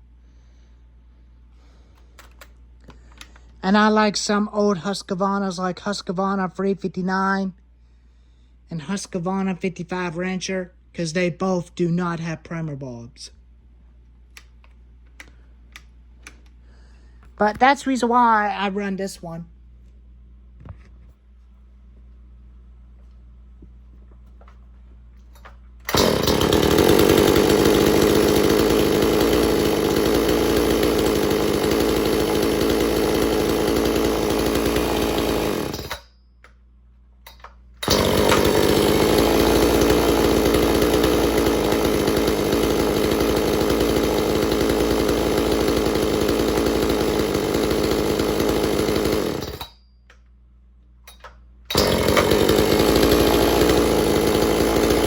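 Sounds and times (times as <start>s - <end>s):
chainsaw engine running: 25.9s - 36.1s, 37.8s - 49.7s, 51.7s - 55.0s.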